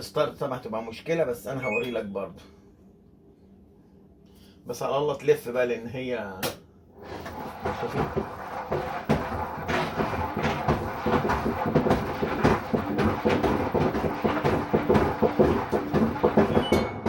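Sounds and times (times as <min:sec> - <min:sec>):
faint motor hum: 0:06.8 - 0:17.0
washing machine drum knocking: 0:07.2 - 0:17.0.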